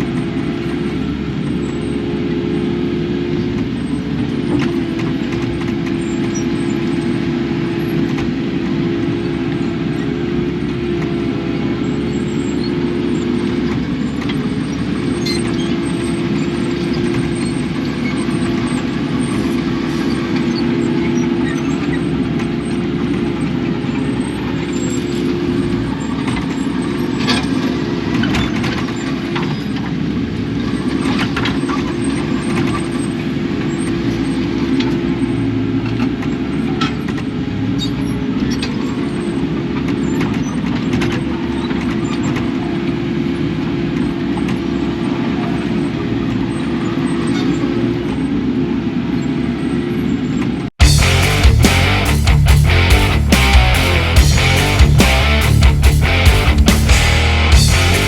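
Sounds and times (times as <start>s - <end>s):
excavator diesel engine running: 50.8s - 58.0s.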